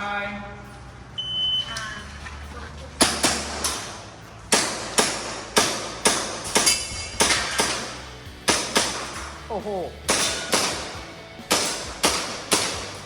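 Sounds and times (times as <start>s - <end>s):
airsoft pistol shots: 3.0s - 9.4s, 10.1s - 13.0s.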